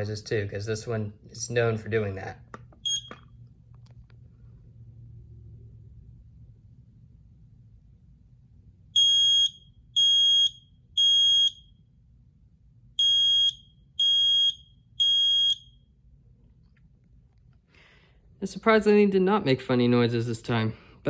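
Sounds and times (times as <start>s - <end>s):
smoke alarm beeps: 2.8s - 3.3s, 9.0s - 11.9s, 13.0s - 15.9s.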